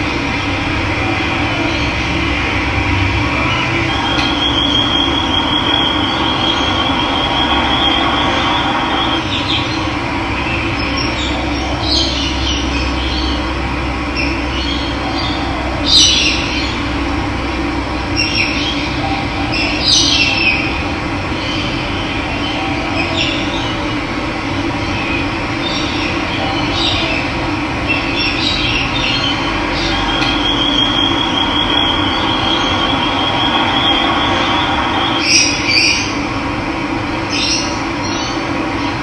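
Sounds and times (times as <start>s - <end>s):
high pulsing trill: 0.0s - 11.3s, 28.8s - 36.6s.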